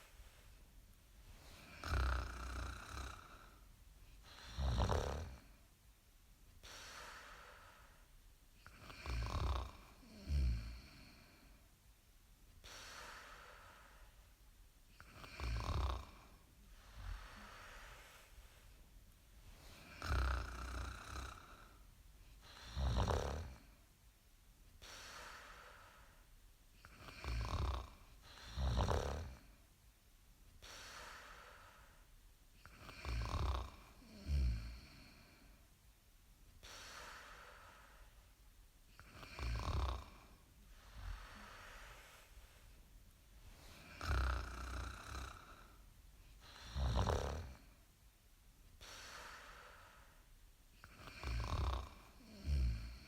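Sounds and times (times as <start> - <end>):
soft breaths: 0.0 - 24.0, 24.6 - 29.8, 30.5 - 53.0
loud low snores: 1.5 - 3.6, 4.3 - 5.5, 8.7 - 11.4, 15.0 - 18.0, 19.7 - 21.8, 22.4 - 23.7, 26.8 - 29.5, 32.6 - 35.4, 39.0 - 42.1, 43.6 - 45.8, 46.4 - 47.7, 50.8 - 53.0.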